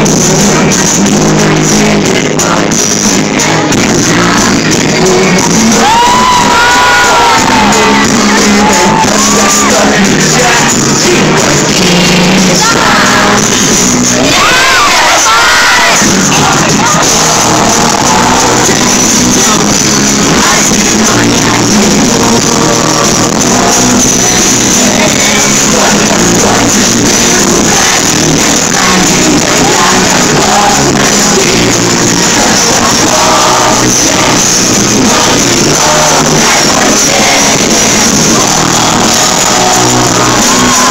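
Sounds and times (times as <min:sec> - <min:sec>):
live pop music: 0:00.0 - 0:40.9
person singing: 0:00.0 - 0:40.9.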